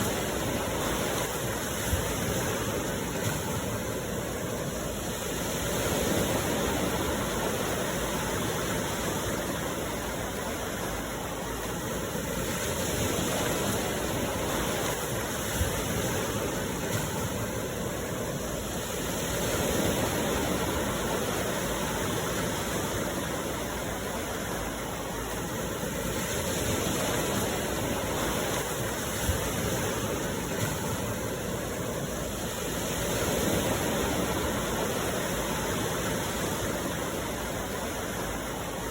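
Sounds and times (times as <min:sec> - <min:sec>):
sea waves washing onto shore: 0:00.0 - 0:38.9.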